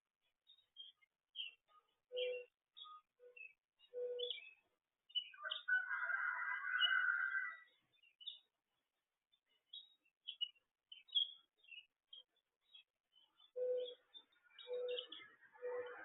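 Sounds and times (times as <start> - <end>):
small birds chirping: 0.1 - 16.0
low bird calls: 2.1 - 4.6, 13.4 - 16.0.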